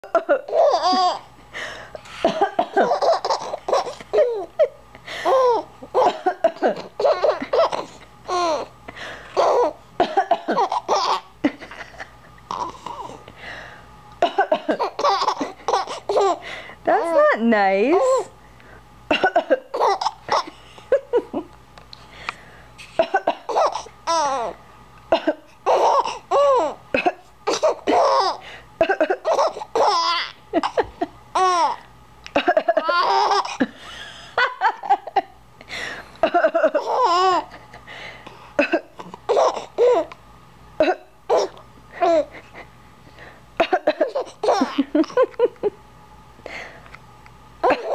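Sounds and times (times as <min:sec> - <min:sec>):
child laughing: 0:00.1 - 0:01.2, 0:02.2 - 0:08.7, 0:09.4 - 0:12.8, 0:14.4 - 0:16.4, 0:25.2 - 0:33.8, 0:36.2 - 0:37.8, 0:40.8 - 0:42.7, 0:43.6 - 0:45.8, 0:47.6 - 0:47.9
woman fake coughing: 0:10.0 - 0:10.7, 0:14.2 - 0:14.9, 0:19.1 - 0:19.6, 0:23.0 - 0:23.6, 0:25.1 - 0:25.5, 0:27.0 - 0:27.7, 0:28.8 - 0:29.3, 0:38.6 - 0:39.0, 0:40.8 - 0:41.1, 0:43.6 - 0:44.3.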